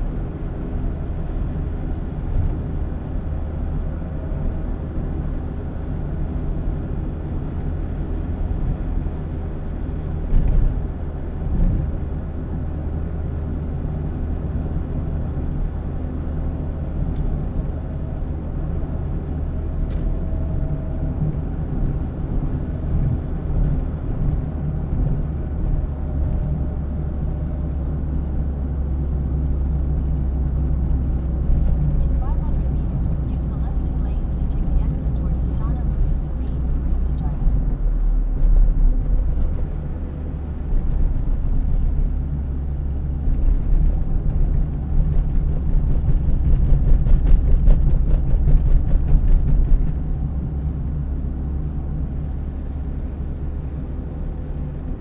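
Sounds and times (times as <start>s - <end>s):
car road and engine hum: 0.0s - 55.0s.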